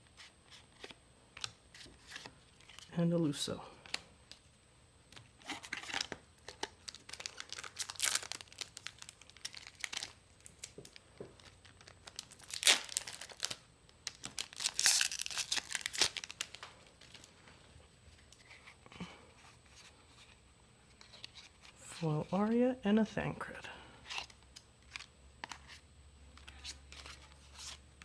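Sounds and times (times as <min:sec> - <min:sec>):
wrappers tearing and crinkling: 0:05.4 - 0:17.3.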